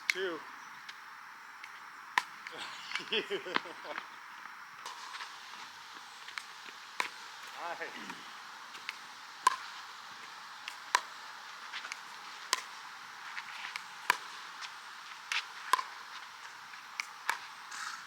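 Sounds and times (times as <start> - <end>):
ball bouncing clicks: 6.2 - 8.2, 8.8 - 9.8, 10.6 - 12.8, 13.7 - 16.0, 16.9 - 18.0.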